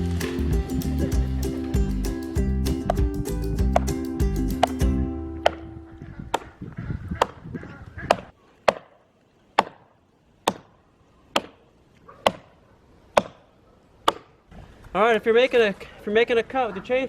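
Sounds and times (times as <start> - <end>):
background music: 0.0 - 5.9
axe chopping wood: 4.6 - 5.7, 6.3 - 6.6, 7.2 - 7.4, 8.1 - 9.0, 9.6 - 10.7, 11.3 - 11.6, 12.2 - 14.4.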